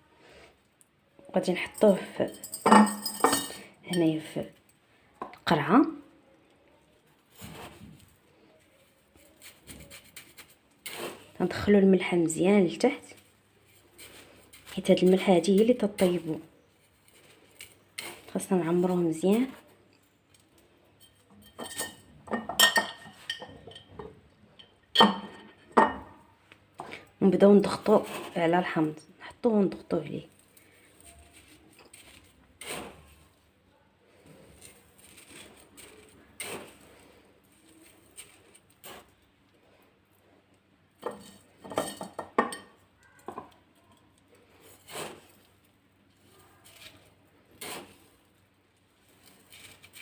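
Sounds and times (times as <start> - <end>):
glass jar clinking: 2.2 - 4.1, 21.0 - 26.1, 41.0 - 43.5.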